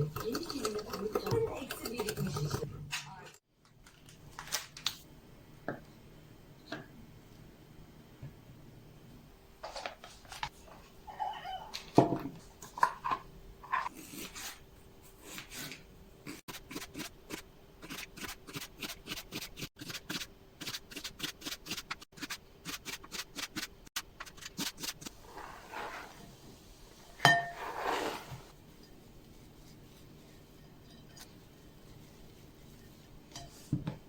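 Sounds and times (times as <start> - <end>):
clatter and scrape: 24.2 - 26.4, 27.5 - 28.5.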